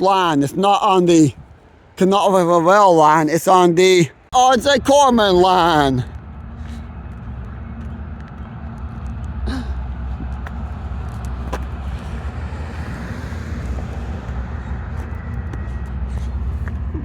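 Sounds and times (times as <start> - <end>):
diesel locomotive engines rumbling: 4.0 - 17.0.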